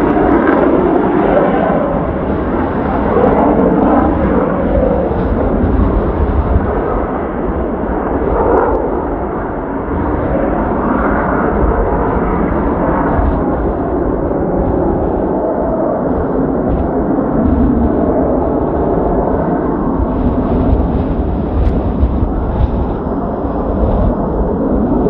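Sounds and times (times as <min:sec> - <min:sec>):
wind buffeting microphone: 0:00.0 - 0:25.0
jet noise rushing: 0:12.4 - 0:25.0.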